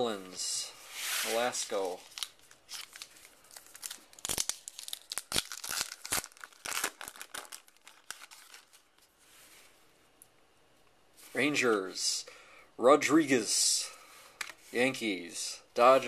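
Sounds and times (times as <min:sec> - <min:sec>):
card pack wrapper crinkling: 0:01.6 - 0:09.0.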